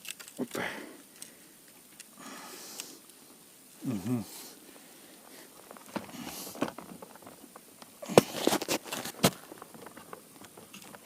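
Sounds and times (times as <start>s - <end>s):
gear clicks and knocks: 0.0s - 0.6s, 5.5s - 11.0s.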